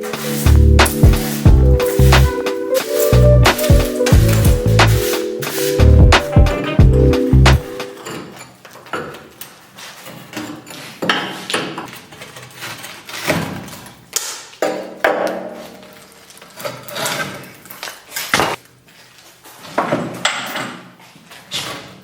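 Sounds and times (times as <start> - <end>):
heavy hammer blows: 0.0 - 8.0.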